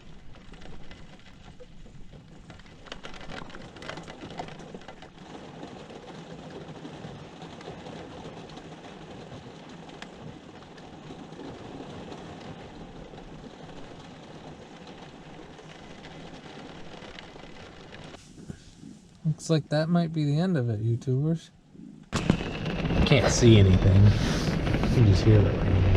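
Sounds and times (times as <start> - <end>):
faint raindrop ticks: 0.0 - 25.9
rain pouring down: 0.0 - 25.9
steady low hum: 18.1 - 25.9.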